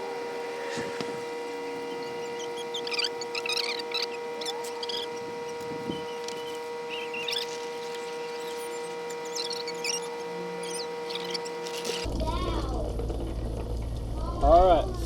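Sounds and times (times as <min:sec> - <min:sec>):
squeaks and sputters of water: 0:01.9 - 0:12.1.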